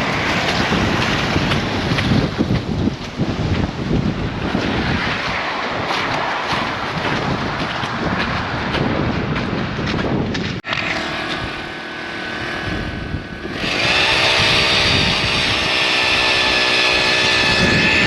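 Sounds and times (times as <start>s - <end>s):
wind buffeting microphone: 0.0s - 18.0s
small engine revving: 10.6s - 18.0s.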